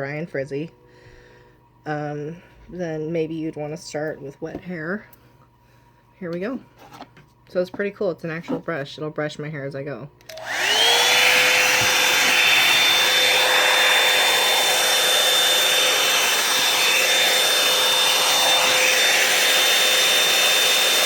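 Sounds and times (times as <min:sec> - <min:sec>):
high motor whine: 0:10.3 - 0:21.0
hot-air brush blowing air: 0:10.3 - 0:21.0.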